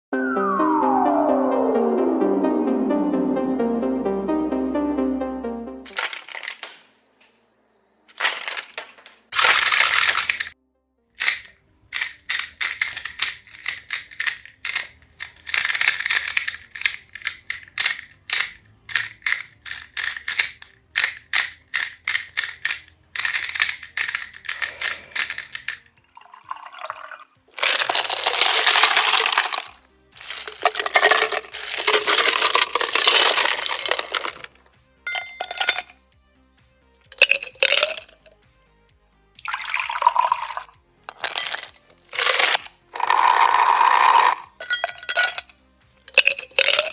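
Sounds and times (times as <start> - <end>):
puzzle cube clicking turns: 8.1 - 10.6, 11.2 - 25.9, 27.6 - 34.6, 37.1 - 38.2, 41.1 - 44.6, 46.1 - 46.9
puzzle cube scraping rotations: 8.1 - 10.6, 11.2 - 25.9, 27.5 - 34.6, 41.1 - 44.6.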